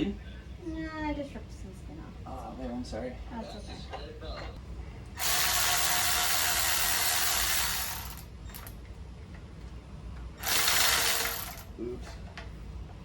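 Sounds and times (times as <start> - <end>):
power tool whirring: 5.2 - 8.7, 10.4 - 11.7.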